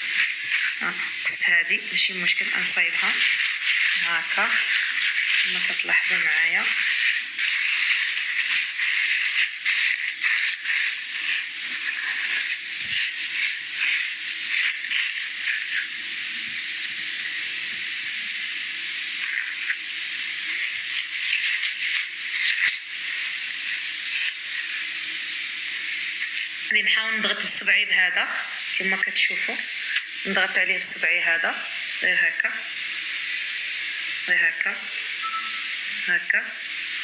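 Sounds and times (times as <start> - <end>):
plastic sheet rustling and crinkling: 0.0 - 17.8, 19.2 - 24.9
steady hiss: 0.0 - 37.0.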